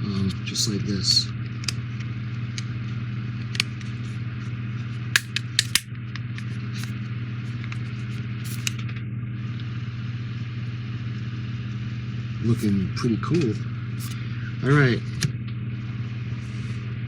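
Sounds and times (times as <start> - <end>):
low electrical hum: 0.0 - 17.0
plastic parts clicking: 5.2 - 5.9.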